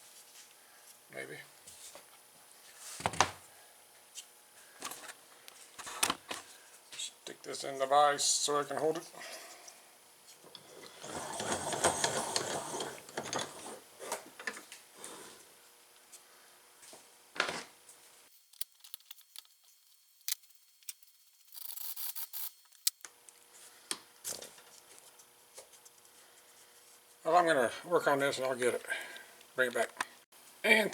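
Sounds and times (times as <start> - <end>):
part scraping in vise: 10.8 - 14.3.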